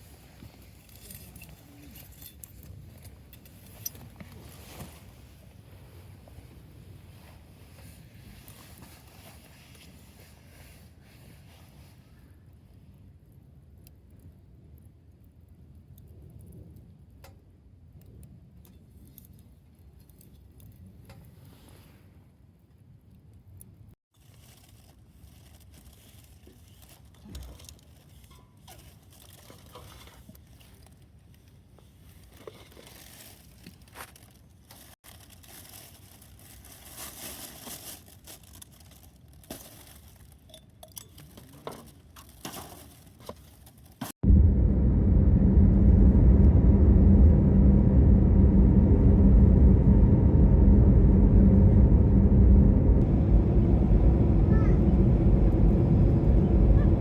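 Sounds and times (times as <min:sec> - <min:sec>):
crinkling and rustling: 0:00.0 - 0:05.5, 0:24.1 - 0:44.2
car running low rumble: 0:44.2 - 0:57.0.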